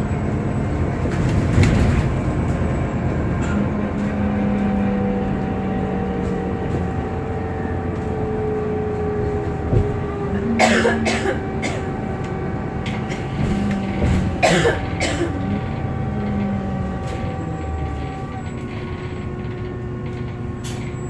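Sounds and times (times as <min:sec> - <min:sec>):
bus road and engine noise: 0:00.0 - 0:21.0.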